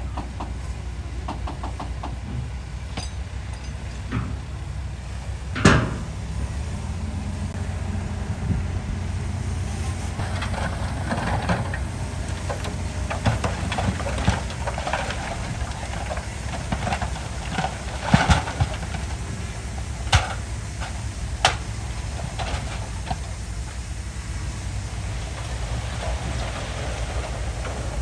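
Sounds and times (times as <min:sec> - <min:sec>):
bulldozer diesel engine running: 0:00.0 - 0:28.0
metal rattles and clanks: 0:10.1 - 0:23.9.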